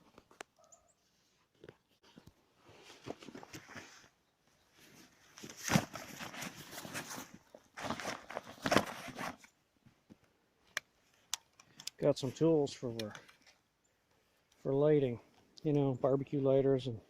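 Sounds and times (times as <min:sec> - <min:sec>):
rustling and scuffing: 0:01.2 - 0:10.2.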